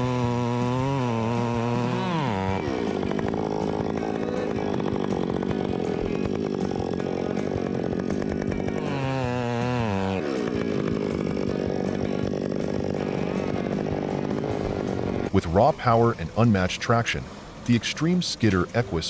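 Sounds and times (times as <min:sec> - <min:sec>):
chainsaw cutting wood: 0:00.0 - 0:15.4.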